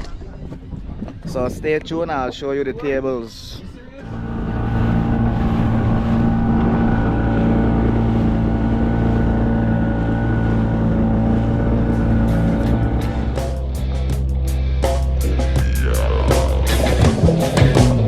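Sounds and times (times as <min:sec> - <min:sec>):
wind buffeting microphone: 0:00.0 - 0:14.0
motorboat engine humming: 0:04.0 - 0:18.0.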